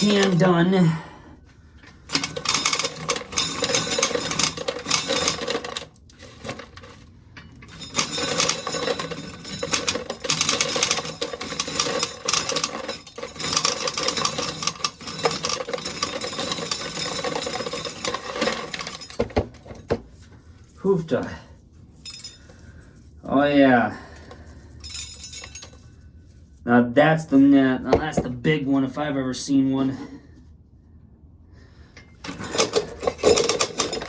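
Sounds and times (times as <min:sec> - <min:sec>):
corn sheller rattling: 0:00.0 - 0:00.6, 0:02.1 - 0:20.0, 0:24.8 - 0:25.8, 0:32.2 - 0:34.0.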